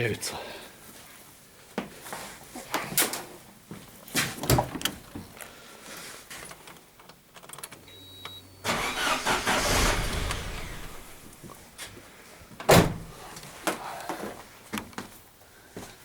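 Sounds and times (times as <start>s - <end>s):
engine starter cranking: 8.6s - 11.6s
engine running: 8.7s - 11.6s.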